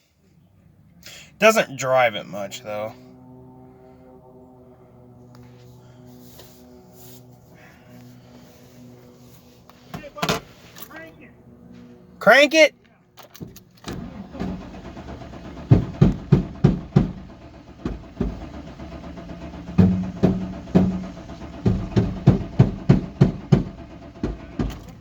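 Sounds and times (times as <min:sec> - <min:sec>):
engine cranking: 0:13.2 - 0:25.0.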